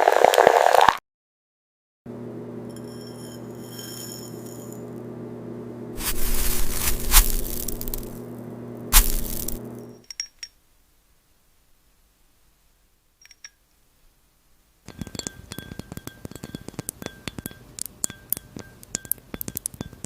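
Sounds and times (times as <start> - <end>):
faint ringing tone: 2.7 - 4.7
glassy clinks and taps: 13.2 - 13.6, 14.9 - 20.0.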